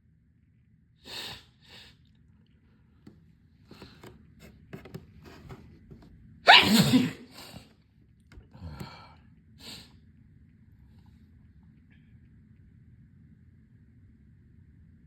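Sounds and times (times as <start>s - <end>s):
person sneezing: 6.5s - 7.7s.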